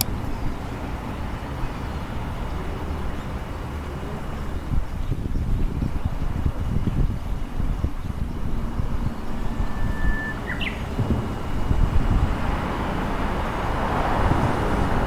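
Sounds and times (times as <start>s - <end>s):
wind buffeting microphone: 0.0s - 15.0s
bird whistling: 9.0s - 11.1s.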